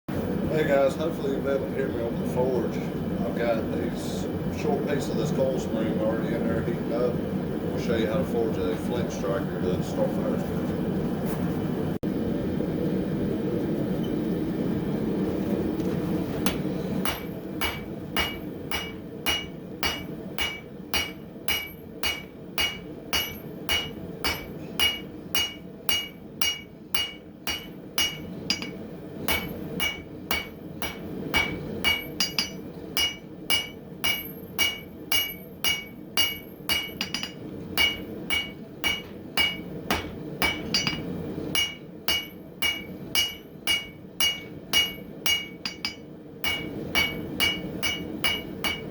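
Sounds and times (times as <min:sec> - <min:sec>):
hammer ringing on anvil: 0:16.5 - 0:48.9.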